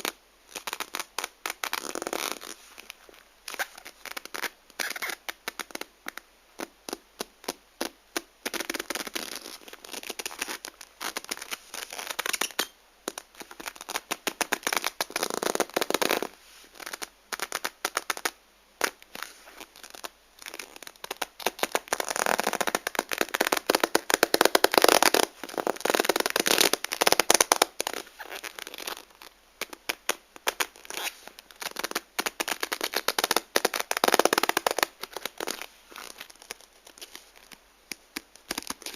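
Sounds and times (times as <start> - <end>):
leather glove squeaking and rubbing: 0.0 - 38.9.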